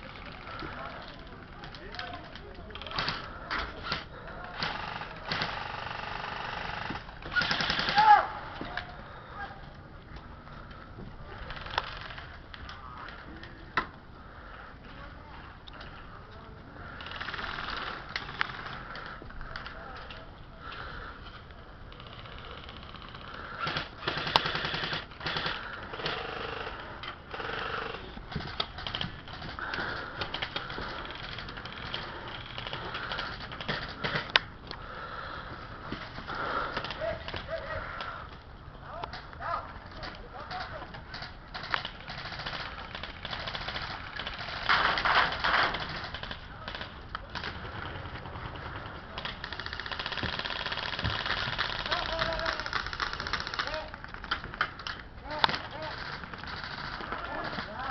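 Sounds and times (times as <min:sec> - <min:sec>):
airsoft full-auto bursts: 0:02.8 - 0:08.3, 0:21.9 - 0:35.3, 0:40.5 - 0:54.3, 0:55.3 - 0:57.9.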